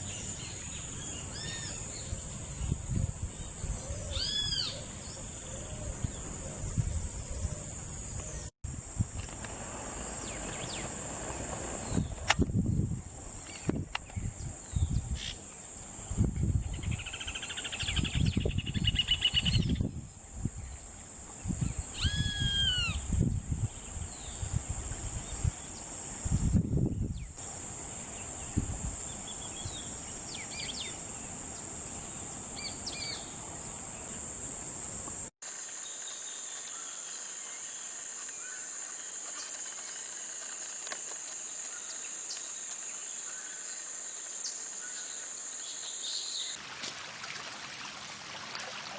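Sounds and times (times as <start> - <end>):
high insect buzz: 0.0 - 46.5
bird calls: 3.4 - 8.5.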